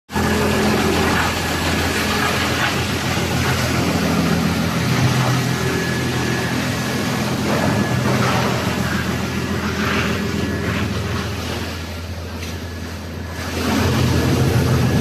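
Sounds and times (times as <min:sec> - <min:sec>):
wood crusher humming: 0:00.1 - 0:15.0.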